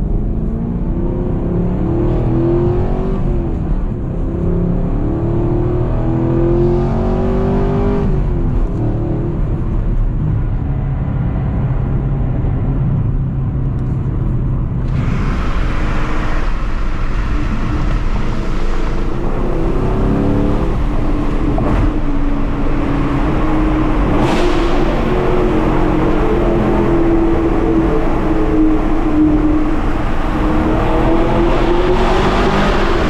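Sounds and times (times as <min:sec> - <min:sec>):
road and wind noise: 0:00.0 - 0:33.0
car engine and exhaust running: 0:08.2 - 0:33.0.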